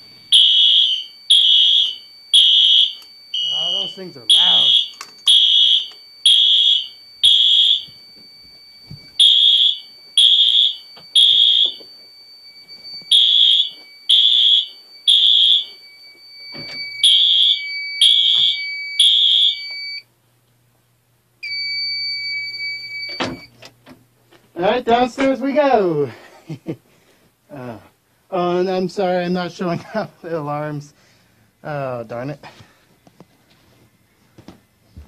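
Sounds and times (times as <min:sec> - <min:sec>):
fire alarm beeps: 0:00.0 - 0:20.1, 0:21.4 - 0:23.6
steady high alarm tone: 0:00.0 - 0:20.1, 0:21.4 - 0:23.5.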